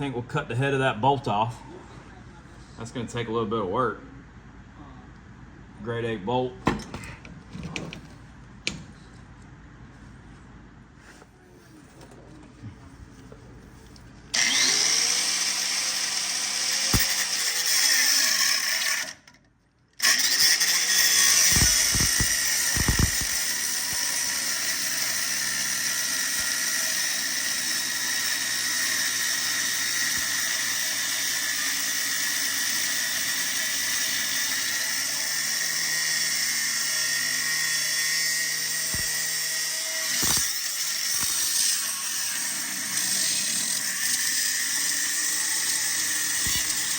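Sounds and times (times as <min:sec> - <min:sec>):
cutoff wheel cutting bolt: 0:14.4 - 0:19.4, 0:20.0 - 0:46.9.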